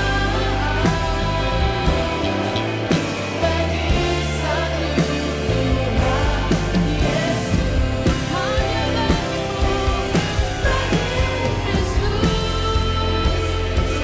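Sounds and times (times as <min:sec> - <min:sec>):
band playing worship song: 0:00.0 - 0:14.0
voices singing: 0:00.0 - 0:14.0.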